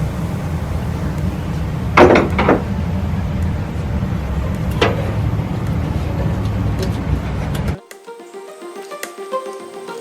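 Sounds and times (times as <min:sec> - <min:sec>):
steady low hum: 0:00.0 - 0:07.8.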